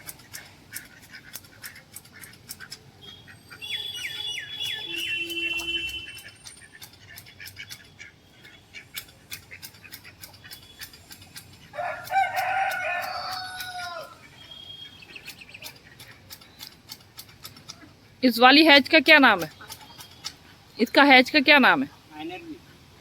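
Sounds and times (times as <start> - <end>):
rooster crowing: 11.7 - 14.2.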